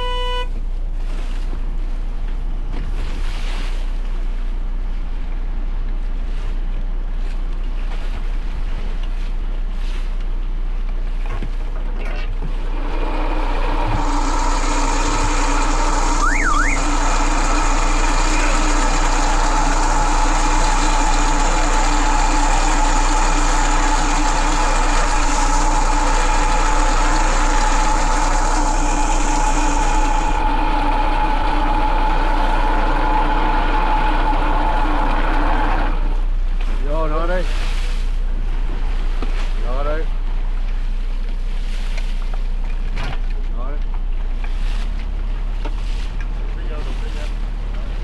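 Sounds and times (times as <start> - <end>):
boat motor whining: 0.0 - 0.6, 12.1 - 36.5.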